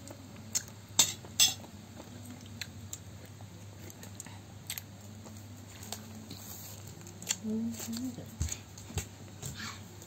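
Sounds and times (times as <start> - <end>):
steady low hum: 0.0 - 10.0.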